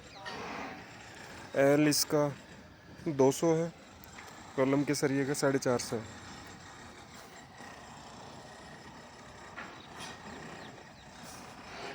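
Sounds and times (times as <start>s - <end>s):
faint background noise: 0.0s - 11.9s.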